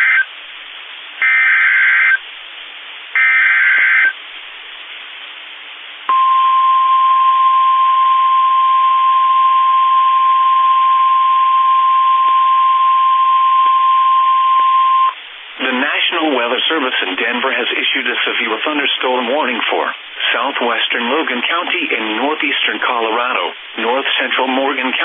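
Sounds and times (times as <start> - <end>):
radio hiss: 0.0 - 6.9, 15.1 - 25.0
screeching digital bursts: 1.2 - 2.2, 3.2 - 4.2
steady alarm tone: 1.2 - 2.2, 3.2 - 4.2.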